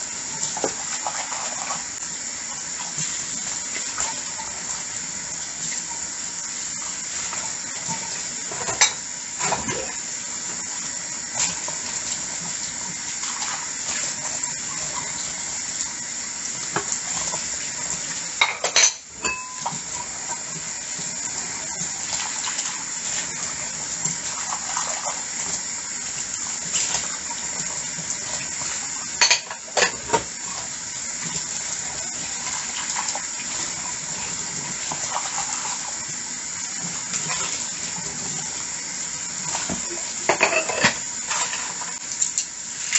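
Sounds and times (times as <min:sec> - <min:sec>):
tap water running into sink: 0:00.0 - 0:42.9
crockery and cutlery clinking: 0:18.4 - 0:19.8, 0:40.3 - 0:41.6
dishes clattering together: 0:18.4 - 0:19.9, 0:29.2 - 0:30.3, 0:39.6 - 0:41.8.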